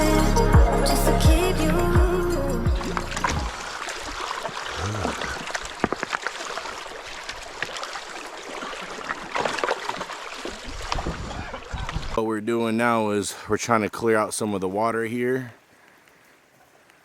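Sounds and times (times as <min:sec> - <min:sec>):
background music: 0:00.0 - 0:03.6
water trickling and splashing: 0:02.7 - 0:12.2.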